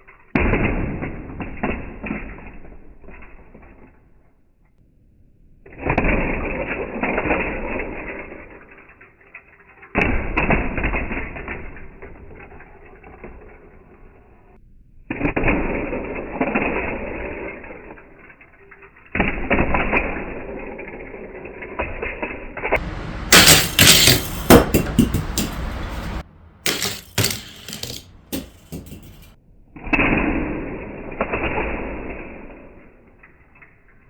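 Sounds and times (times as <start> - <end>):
toy cars running on plastic track: 5.7 - 14.6, 15.4 - 29.4.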